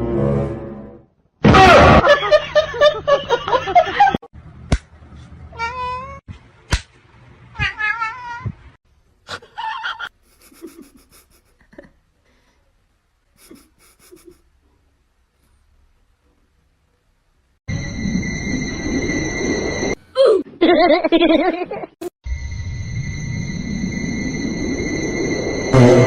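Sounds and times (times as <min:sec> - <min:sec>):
cat meowing and yowling: 0:05.6 - 0:06.2, 0:07.6 - 0:08.6.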